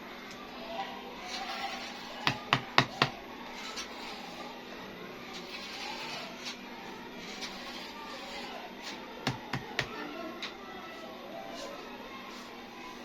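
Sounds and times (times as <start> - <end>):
sharp taps of small pieces: 2.3 - 3.2, 9.3 - 10.0.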